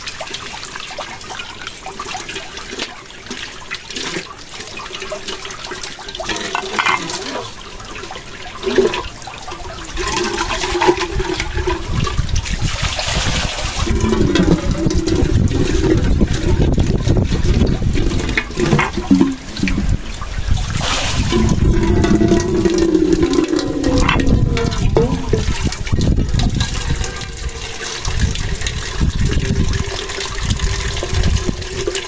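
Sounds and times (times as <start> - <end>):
gusting wind with deep rumble: 11.1 - 31.9.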